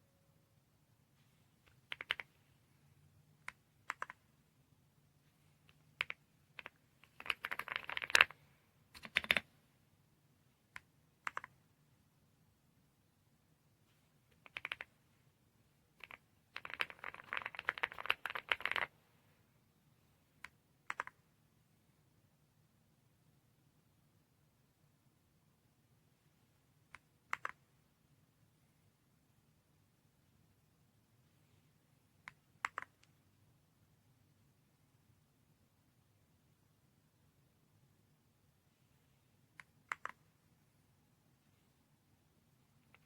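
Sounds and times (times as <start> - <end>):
typing on mechanical keyboard: 1.7 - 2.3, 3.5 - 4.2, 5.7 - 9.5, 14.3 - 14.9, 16.0 - 18.9, 20.9 - 21.2, 39.6 - 40.2.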